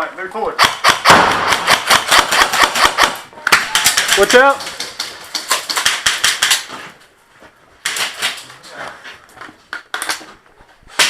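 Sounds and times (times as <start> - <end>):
airsoft gunfire bursts: 0.6 - 4.3.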